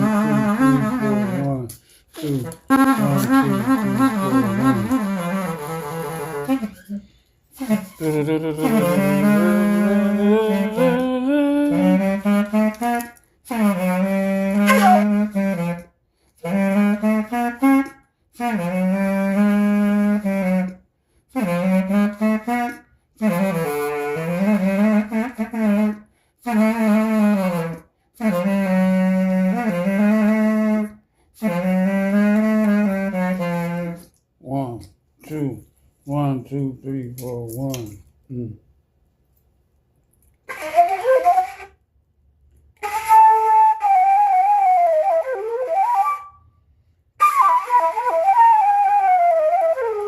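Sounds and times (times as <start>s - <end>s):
solo saxophone playing low notes: 0.0s - 7.0s, 7.6s - 20.8s, 21.4s - 34.1s.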